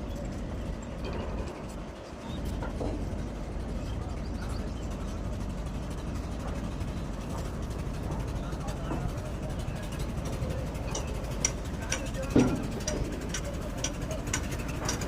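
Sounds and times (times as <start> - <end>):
low engine rumble: 0.0 - 15.0
faint clicks: 10.8 - 15.0.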